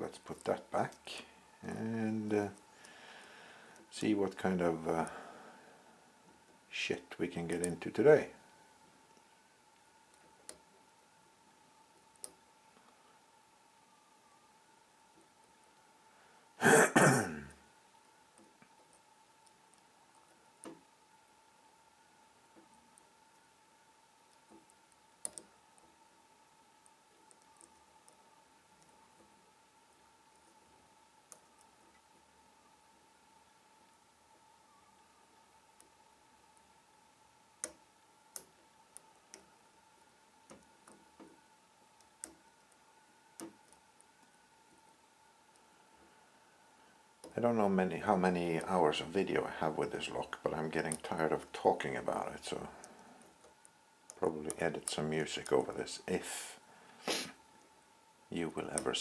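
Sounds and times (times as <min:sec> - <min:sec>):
person clearing throat: 0:16.6 - 0:17.6.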